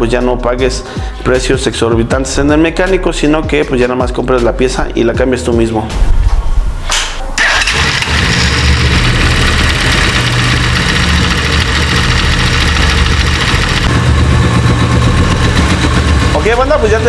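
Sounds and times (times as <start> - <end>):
loud mechanical clutch noise: 7.4 - 17.0
motorcycle engine idling: 7.4 - 17.0.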